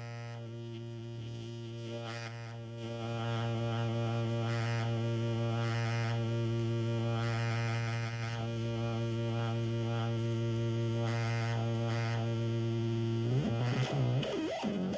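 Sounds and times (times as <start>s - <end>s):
buzzy synth drone: 0.0s - 14.9s
warbling gliding synth pitch: 13.6s - 14.9s.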